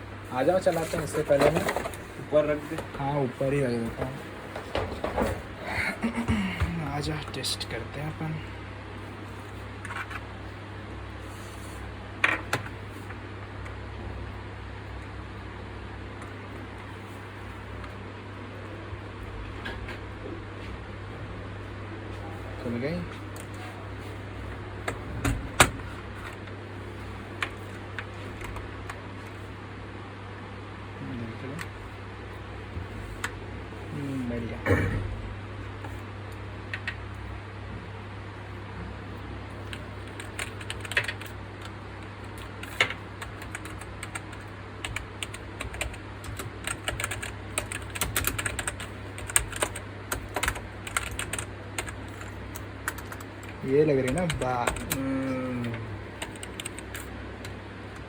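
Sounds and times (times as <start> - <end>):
steady low hum: 0.0 - 58.0
keyboard typing clicks: 42.3 - 57.6.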